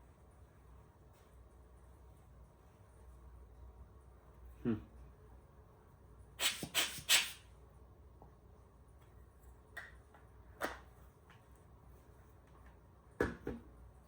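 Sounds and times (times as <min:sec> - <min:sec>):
air blower hissing bursts: 0:06.4 - 0:07.4.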